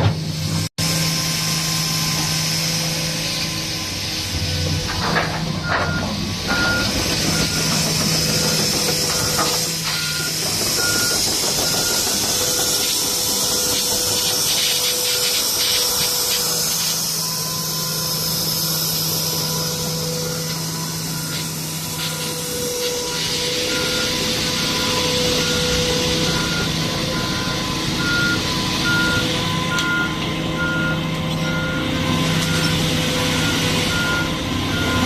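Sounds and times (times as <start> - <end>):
excavator diesel engine: 0.0 - 35.0
high-pitched warning beeps: 8.4 - 13.8, 14.5 - 35.0
high hiss: 12.4 - 23.8.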